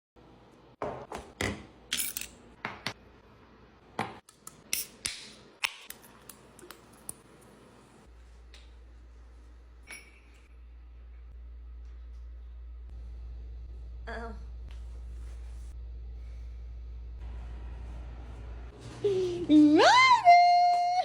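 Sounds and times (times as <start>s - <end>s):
steady low hum: 7.8s - 19.7s.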